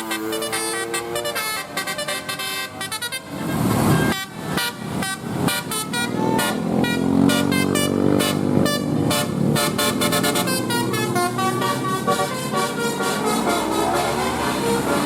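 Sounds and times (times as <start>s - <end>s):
bus musical air horn: 0.0s - 15.0s
loud noisy rush: 9.2s - 15.0s.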